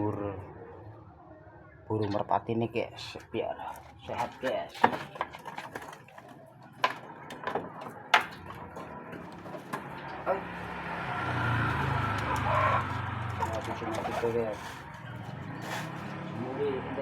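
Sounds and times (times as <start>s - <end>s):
pigeons cooing: 11.3s - 16.4s.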